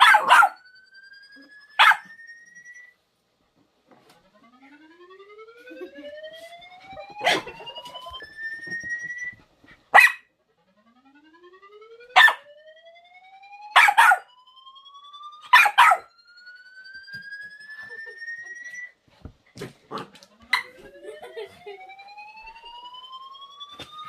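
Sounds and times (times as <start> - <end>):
dog barking: 0.0 - 0.6, 1.8 - 2.0, 9.9 - 10.3, 12.2 - 12.4, 13.8 - 14.3, 15.5 - 16.1
rising whistle-like tone: 0.0 - 3.0, 4.3 - 9.5, 10.8 - 19.1, 20.4 - 24.0.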